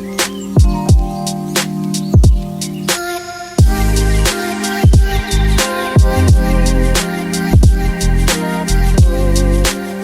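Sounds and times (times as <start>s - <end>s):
deep kick drums: 2.2s - 2.5s, 3.6s - 3.8s, 4.8s - 5.2s, 6.0s - 6.6s, 7.6s - 8.0s, 9.0s - 9.2s
held chords: 3.6s - 10.0s.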